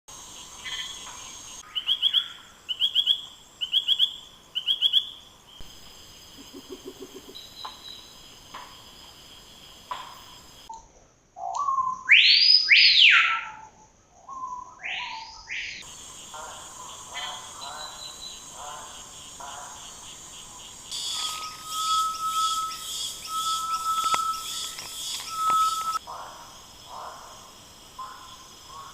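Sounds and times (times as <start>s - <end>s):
whistled bird calls: 11.4s - 13.6s, 20.9s - 26.0s
high background drone: 20.9s - 26.0s
faint bird calls: 20.9s - 26.3s.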